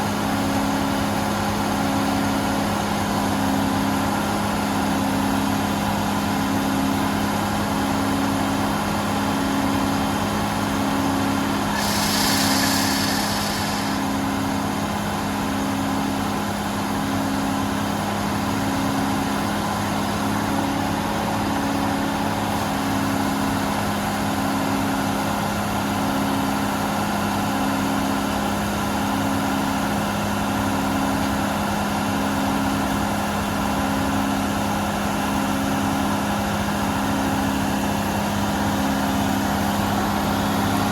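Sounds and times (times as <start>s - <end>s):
tractor diesel engine running: 0.0s - 40.9s
brief hiss: 11.6s - 15.1s.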